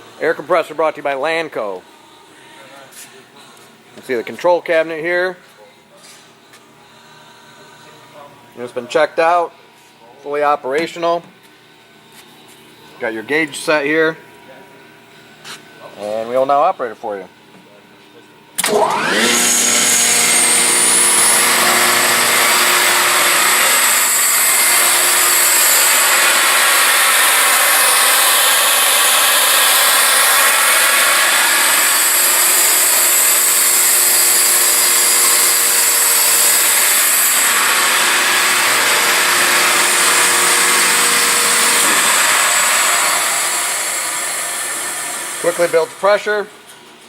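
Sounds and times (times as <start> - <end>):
compressor hum: 0.0 - 47.0
air compressor hissing: 18.6 - 46.4.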